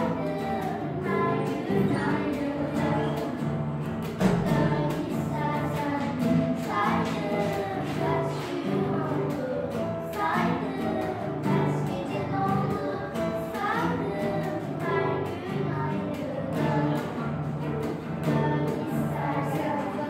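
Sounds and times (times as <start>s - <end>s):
girls singing together: 0.0s - 20.0s
instrumental accompaniment: 0.0s - 20.0s.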